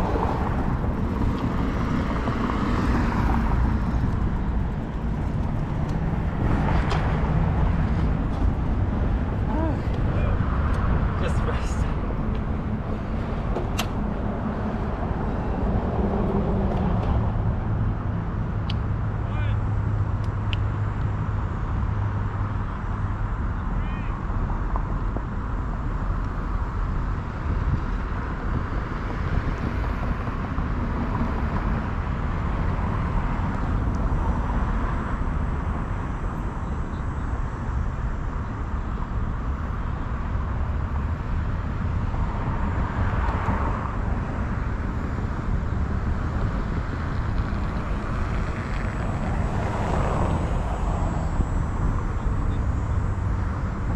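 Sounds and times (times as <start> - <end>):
bicycle rolling noise: 0.0 - 11.2, 37.9 - 53.9
wind rumble on microphone: 0.0 - 53.9.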